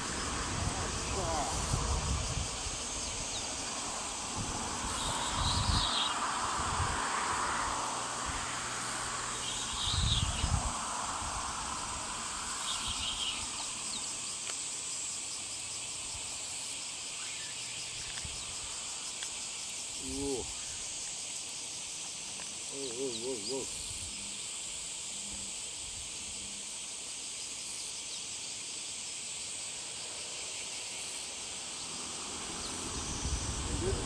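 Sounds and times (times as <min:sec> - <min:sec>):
insects chirring: 0:00.0 - 0:34.0.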